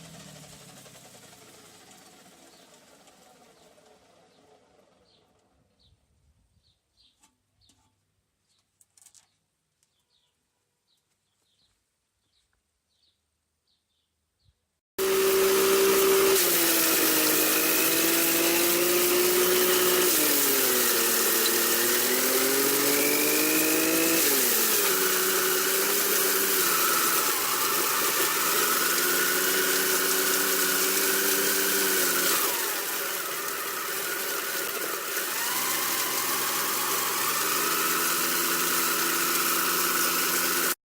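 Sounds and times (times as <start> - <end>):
loud motor: 0.0 - 5.2, 15.0 - 40.8.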